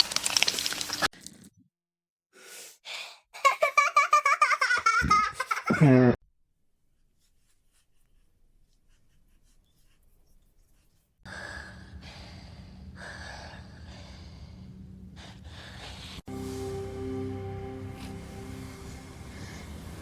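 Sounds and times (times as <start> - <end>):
low steady hum: 11.6 - 20.0.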